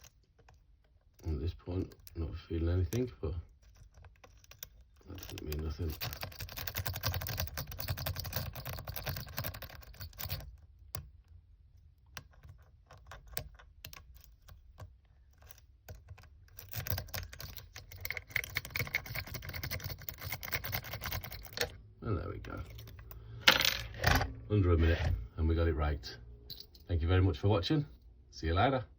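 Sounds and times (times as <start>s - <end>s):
lock pick raking pins: 0.0s - 10.6s, 12.2s - 21.8s, 22.5s - 24.4s.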